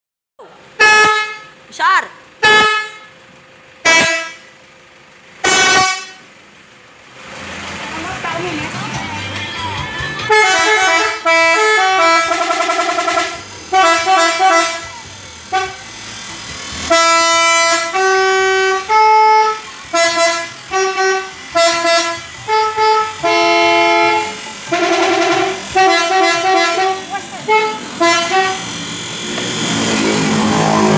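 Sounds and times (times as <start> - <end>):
multi-tone musical horn playing: 2.4 - 3.1, 3.8 - 4.5, 5.4 - 6.3, 10.2 - 15.8, 16.9 - 28.8.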